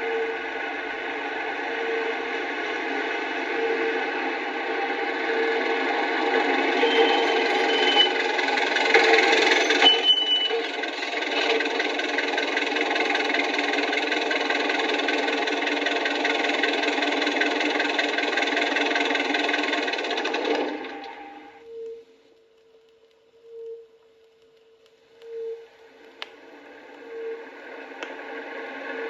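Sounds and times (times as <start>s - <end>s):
machine rattling: 6.4s - 21.2s.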